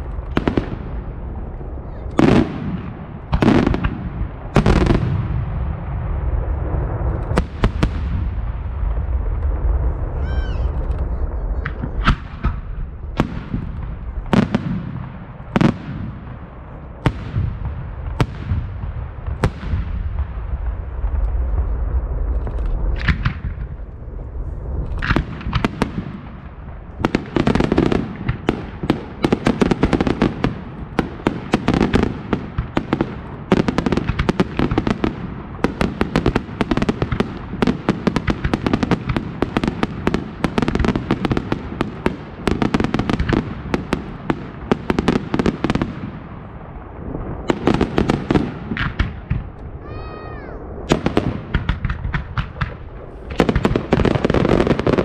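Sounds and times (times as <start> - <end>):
fireworks exploding: 0.0 - 55.0
firework whistle: 10.1 - 12.4.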